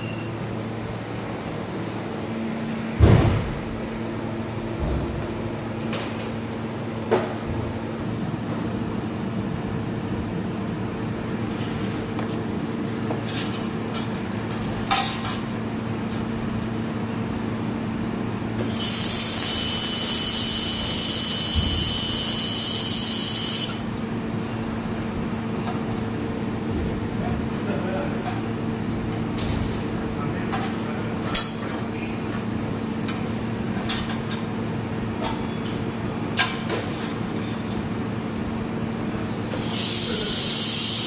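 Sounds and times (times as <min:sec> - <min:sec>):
high-pitched welder whine: 0:18.6 - 0:24.0, 0:39.5 - 0:41.0
welding machine humming: 0:18.6 - 0:24.0, 0:39.5 - 0:41.0.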